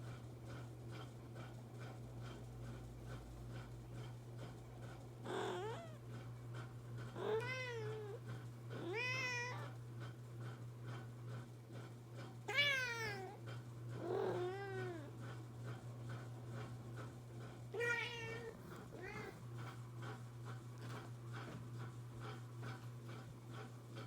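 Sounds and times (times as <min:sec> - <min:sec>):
cat meowing: 0:07.2 - 0:08.2, 0:08.8 - 0:09.7, 0:12.5 - 0:13.4.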